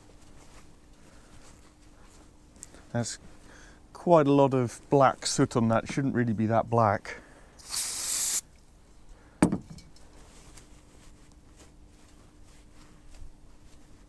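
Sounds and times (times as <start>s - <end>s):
faint scuffing: 0.0s - 3.6s, 10.1s - 14.0s
aerosol spray hiss: 7.6s - 8.4s.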